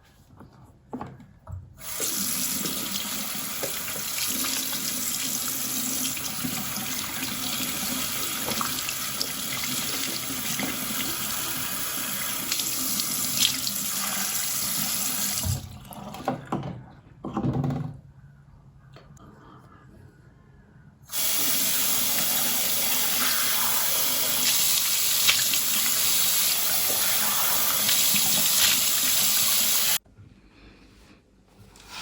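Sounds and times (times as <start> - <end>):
water running from a tap: 1.8 - 15.8, 21.1 - 30.0.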